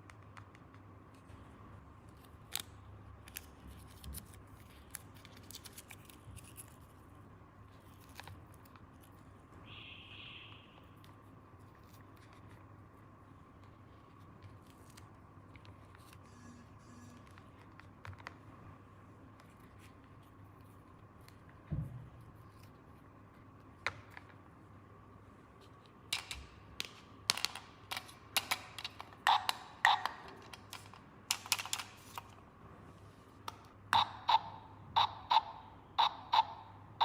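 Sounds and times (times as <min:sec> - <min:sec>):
plastic toy parts clicking: 0:26.1 - 0:32.4.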